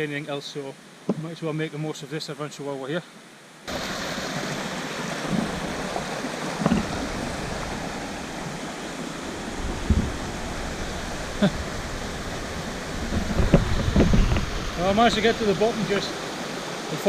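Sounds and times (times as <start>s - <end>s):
stream water rushing: 3.2s - 17.0s
soft knocks: 13.0s - 14.7s.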